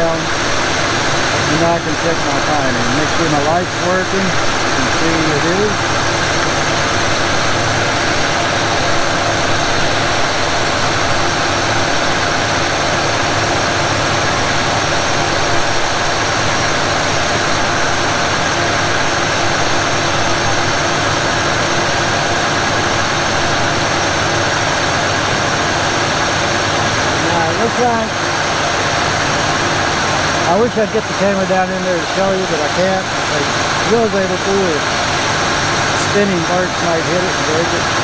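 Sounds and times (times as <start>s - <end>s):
car engine idling: 0.0s - 38.0s.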